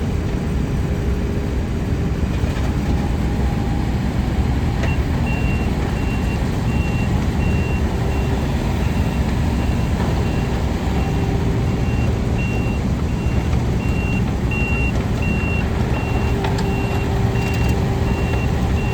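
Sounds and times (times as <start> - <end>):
excavator diesel engine running: 0.0 - 18.9
travel alarm beeping: 4.9 - 18.9.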